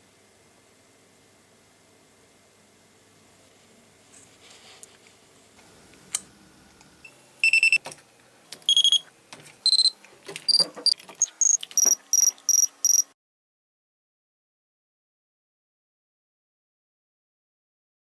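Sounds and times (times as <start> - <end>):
shrill alarm beeps: 7.4 - 7.8, 8.7 - 9.1, 9.7 - 10.6, 11.2 - 13.1.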